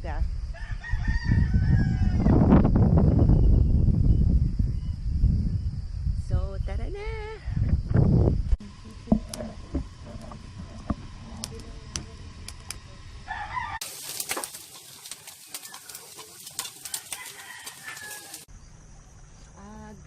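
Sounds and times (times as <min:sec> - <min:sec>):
rooster crowing: 0:00.5 - 0:02.5, 0:13.2 - 0:13.9, 0:15.6 - 0:18.5.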